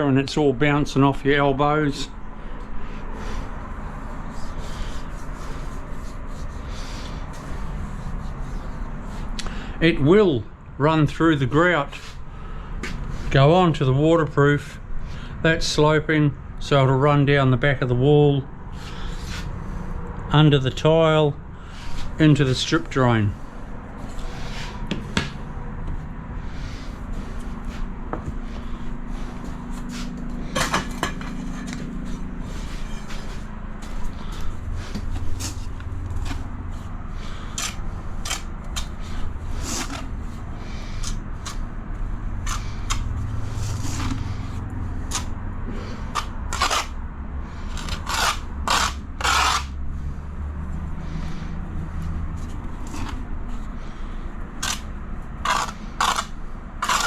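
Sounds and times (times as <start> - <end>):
low steady hum: 0.0 - 57.0
tiles and tools scraping and knocking: 29.4 - 34.0.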